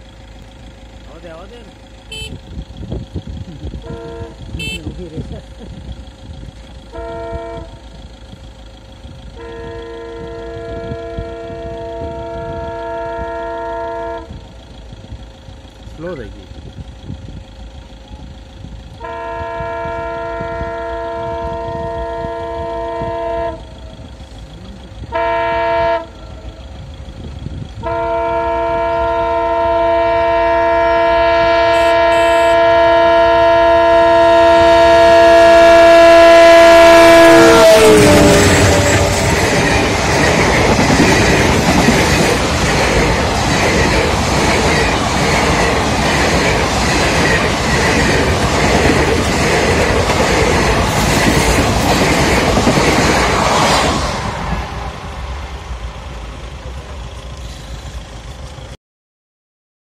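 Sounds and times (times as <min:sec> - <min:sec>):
locomotive horn blasts: 0:02.1 - 0:02.6, 0:03.7 - 0:05.0, 0:06.9 - 0:07.9, 0:09.3 - 0:14.4, 0:19.0 - 0:23.8, 0:25.1 - 0:26.6, 0:27.8 - 0:40.5
train wheels clacking over rail joints: 0:37.6 - 0:55.1.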